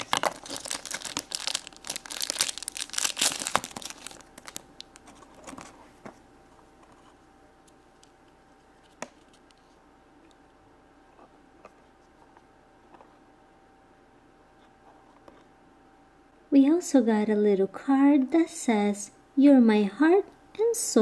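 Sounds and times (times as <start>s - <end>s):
packaging crinkling and tearing: 0.0s - 5.8s.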